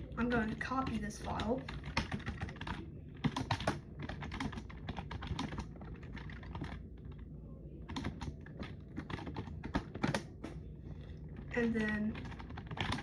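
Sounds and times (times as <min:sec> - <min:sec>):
typing on keyboard: 0:00.2 - 0:07.2, 0:07.9 - 0:10.6, 0:11.4 - 0:13.0.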